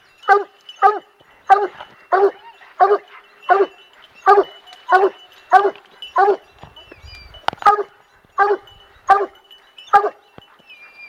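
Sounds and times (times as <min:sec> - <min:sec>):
dog barking: 0:00.3 - 0:06.5, 0:07.6 - 0:10.2.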